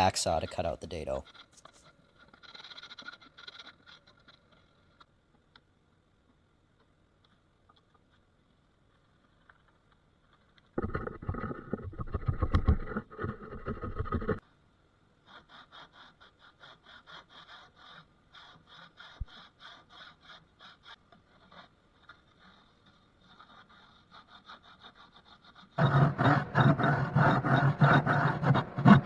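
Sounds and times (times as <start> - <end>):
back saw cutting wood: 0.0 - 1.2, 24.2 - 29.0.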